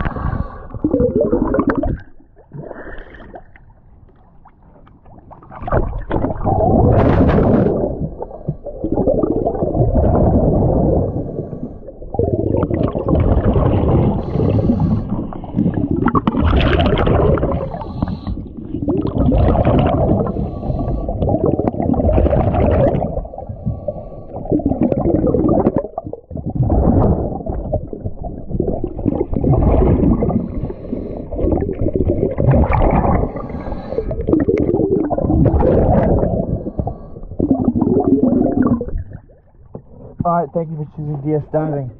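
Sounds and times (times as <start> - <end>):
diver breathing through regulator: 0.0 - 1.2, 10.6 - 12.2, 13.8 - 16.0, 17.4 - 18.9, 20.0 - 21.6, 23.4 - 24.8, 30.1 - 32.2, 32.8 - 34.9, 35.7 - 37.7
rush of exhaled bubbles: 0.0 - 3.8, 5.1 - 40.4.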